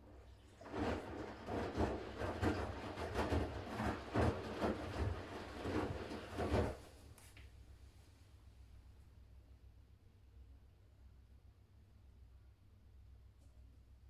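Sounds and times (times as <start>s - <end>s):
washing machine drum swishing thumps: 0.6s - 7.0s.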